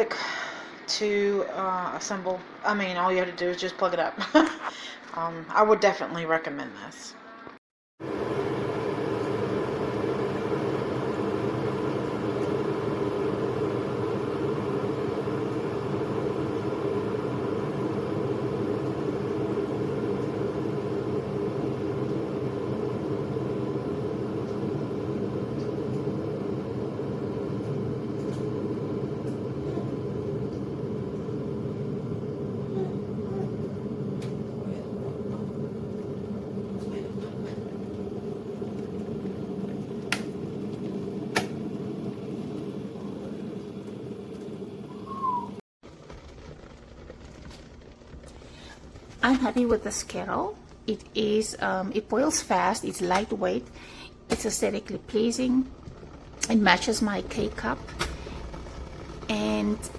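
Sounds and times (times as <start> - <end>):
electric kettle rumbling: 8.0 - 59.9
kettle switch clicks: 40.1 - 40.4, 41.3 - 41.6.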